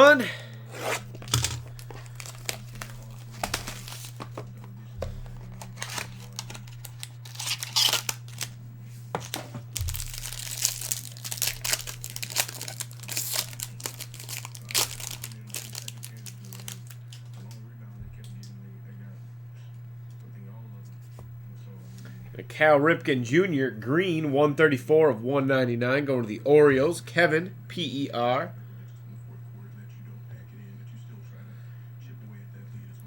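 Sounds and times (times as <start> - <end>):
steady low hum: 0.0 - 33.0
cards rustling and clicking: 0.6 - 17.6
wrappers crinkling and tearing: 0.7 - 4.6, 5.3 - 8.6, 9.2 - 17.6.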